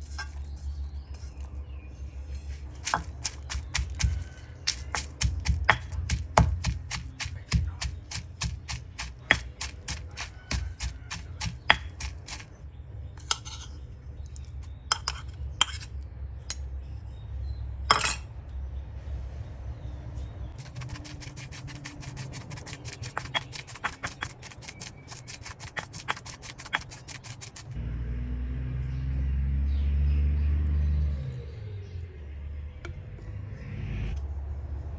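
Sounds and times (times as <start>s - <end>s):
kitchen utensils clicking and clinking: 20.6s - 27.8s.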